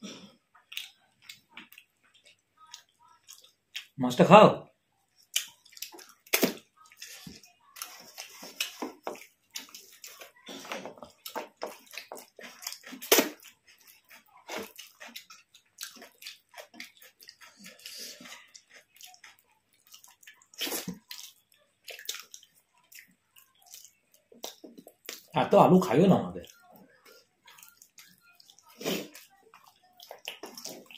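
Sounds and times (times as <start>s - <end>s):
wet chewing: 0.3s - 4.0s, 5.1s - 25.4s, 26.4s - 30.9s
lip smacks: 5.2s - 7.1s, 11.7s - 13.5s.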